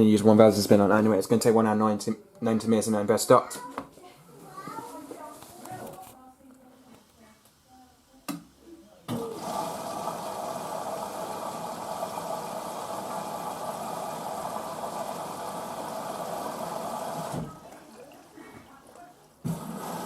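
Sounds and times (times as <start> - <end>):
washing machine filling with water: 9.1 - 20.0.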